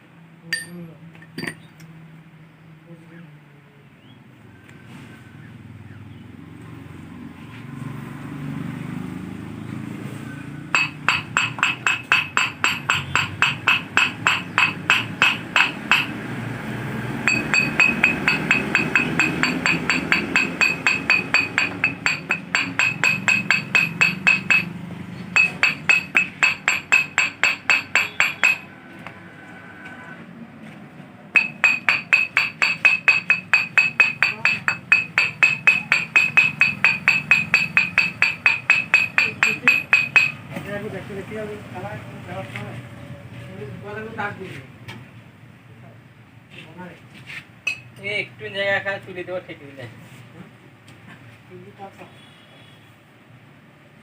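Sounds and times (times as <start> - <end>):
hammer striking metal: 0.5 - 0.8, 1.4 - 1.7, 10.7 - 16.4, 17.2 - 28.8, 31.4 - 40.5, 47.7 - 48.0.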